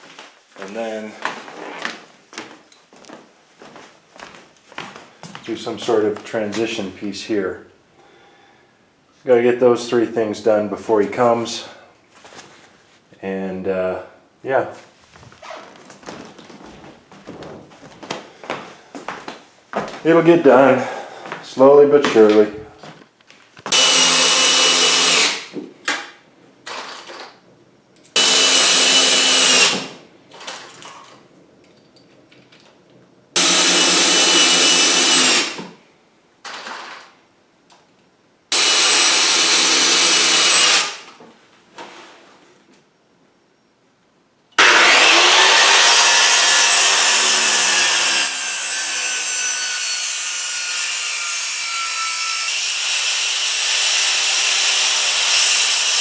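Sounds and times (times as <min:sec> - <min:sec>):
electric power saw cutting wood: 0:23.7 - 0:25.5, 0:28.2 - 0:30.0, 0:33.4 - 0:35.8, 0:38.5 - 0:41.1, 0:44.6 - 0:56.0.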